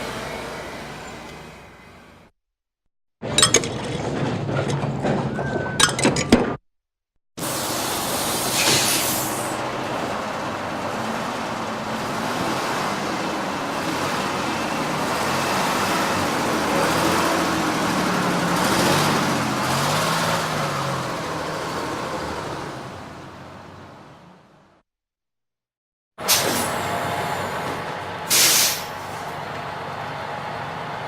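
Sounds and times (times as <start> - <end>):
bus engine running: 0.0 - 2.3, 7.4 - 24.8, 26.2 - 31.0
air hiss bursts: 7.5 - 9.6, 28.3 - 29.0.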